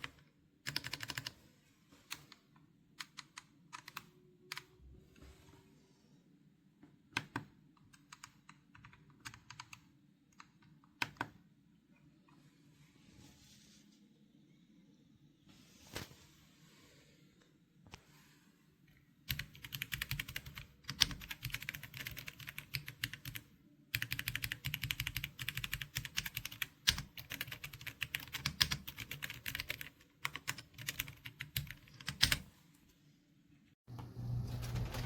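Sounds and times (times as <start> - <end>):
fast typing on mechanical keyboard: 0.0 - 1.3, 8.0 - 9.8, 19.3 - 32.4.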